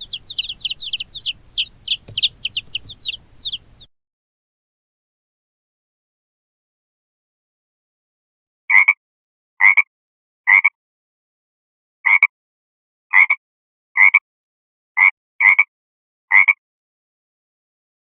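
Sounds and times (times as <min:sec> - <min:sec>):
frog croaking: 0:00.0 - 0:03.8.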